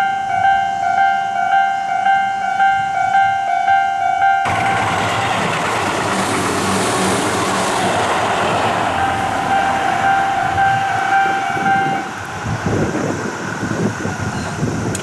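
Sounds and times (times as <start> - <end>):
level crossing warning alarm: 0.0 - 14.8
train rushing past: 4.4 - 15.0.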